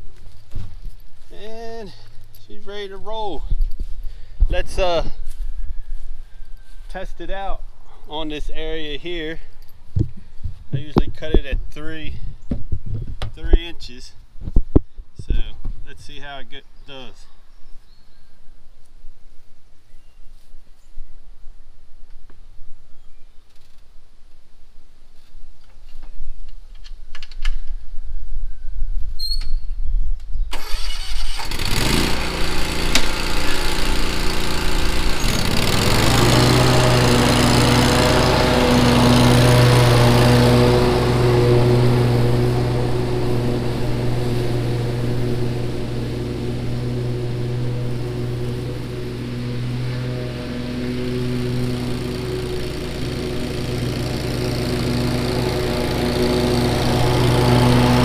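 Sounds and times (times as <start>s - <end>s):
lawn mower engine running: 30.5s - 58.0s
mower blades cutting grass: 30.6s - 58.0s.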